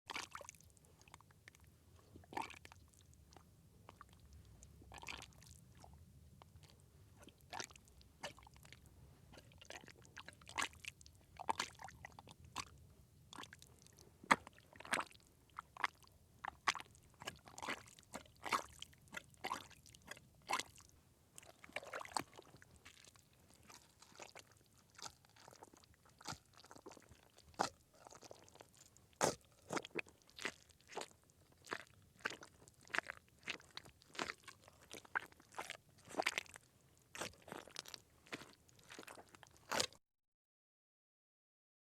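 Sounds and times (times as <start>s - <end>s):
mud squelching: 9.4s - 12.7s, 16.6s - 20.8s, 21.4s - 40.0s.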